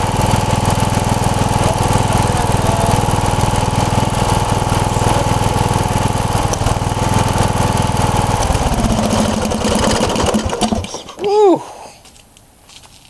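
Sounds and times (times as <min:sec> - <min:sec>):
riding mower engine running: 0:00.0 - 0:11.2.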